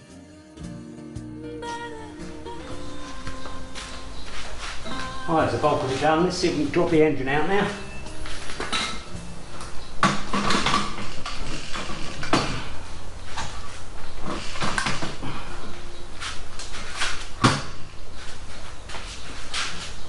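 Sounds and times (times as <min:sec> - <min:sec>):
metal tools clinking and scraping: 0:04.4 - 0:09.3.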